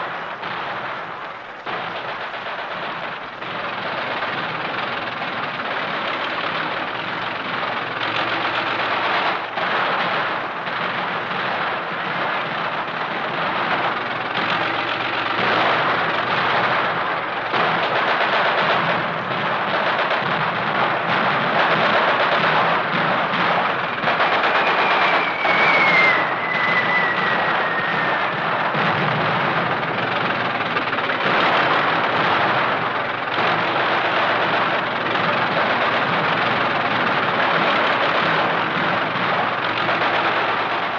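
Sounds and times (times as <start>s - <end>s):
machine-gun fire: 0.0s - 40.9s
tank engines and tracks: 0.0s - 40.9s
falling whistle: 24.5s - 28.4s.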